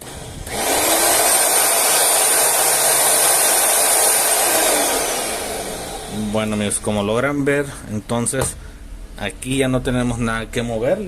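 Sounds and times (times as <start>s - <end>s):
electric motor whirring: 0.0s - 6.4s.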